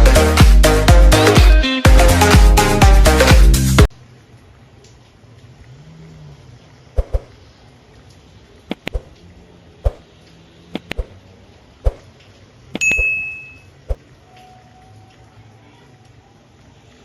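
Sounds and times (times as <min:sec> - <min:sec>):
ringing metallic clink: 0:12.8 - 0:13.7
faint steady tone: 0:12.8 - 0:17.0.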